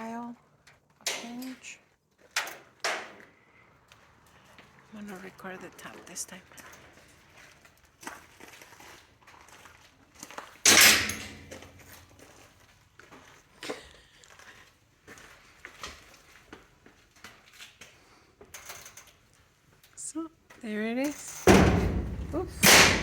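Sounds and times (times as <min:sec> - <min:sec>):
door bump: 0:21.5 - 0:23.0.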